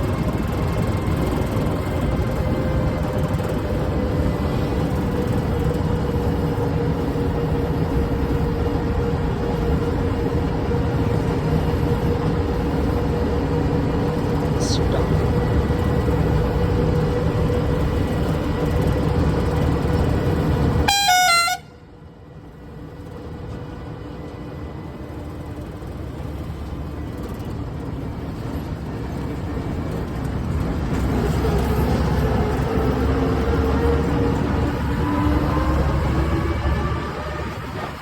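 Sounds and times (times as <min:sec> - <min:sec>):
combine harvester engine running: 0:00.0 - 0:38.0
horn blast stepping in pitch: 0:20.8 - 0:21.8.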